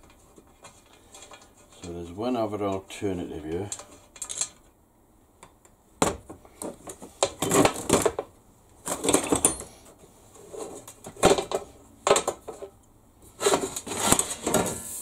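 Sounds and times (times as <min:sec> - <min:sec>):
metal parts clinking and clattering: 0:03.7 - 0:04.7.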